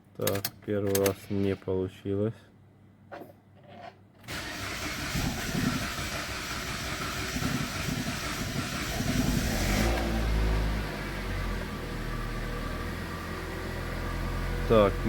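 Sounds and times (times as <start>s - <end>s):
car engine cranking and starting: 4.3s - 15.0s.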